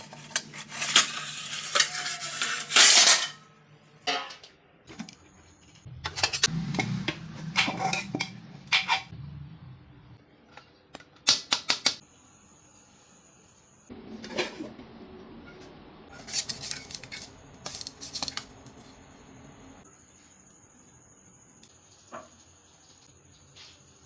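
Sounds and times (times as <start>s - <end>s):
cutlery clinking and scraping dishes: 0.0s - 3.4s.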